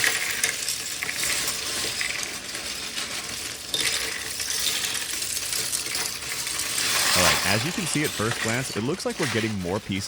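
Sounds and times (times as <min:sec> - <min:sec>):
plastic bricks clattering: 0:00.0 - 0:10.0.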